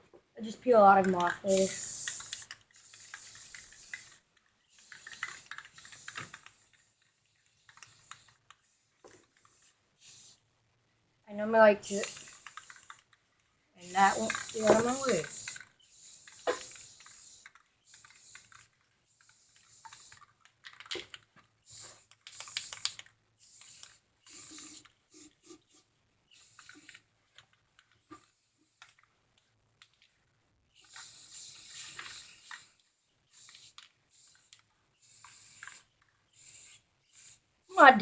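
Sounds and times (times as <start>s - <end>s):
spray can hissing: 1.2s - 6.9s, 9.6s - 10.4s, 11.8s - 13.0s, 13.8s - 18.7s, 21.7s - 27.0s, 30.8s - 32.8s, 33.4s - 38.0s.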